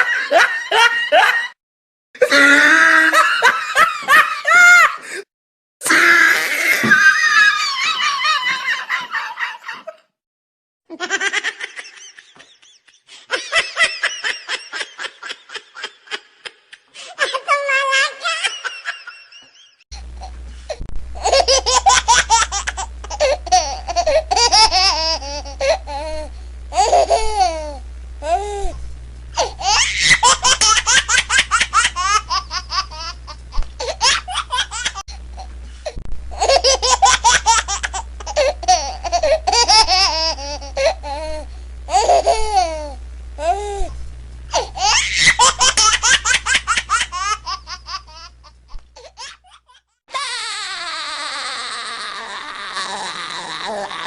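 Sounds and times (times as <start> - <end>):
person laughing: 0.0 - 1.6, 2.2 - 5.2, 5.9 - 10.1, 10.9 - 20.4, 21.2 - 28.8, 29.4 - 35.5, 36.3 - 43.9, 44.6 - 48.4
low hum: 19.9 - 48.9.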